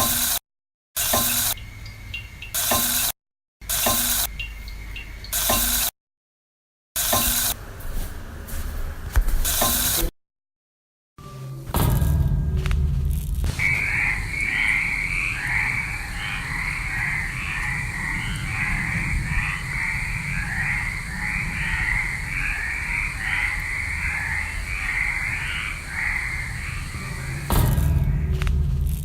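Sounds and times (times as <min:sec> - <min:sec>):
low rumble: 0:11.7 - 0:29.0
rasping croak-like calls: 0:13.5 - 0:28.6.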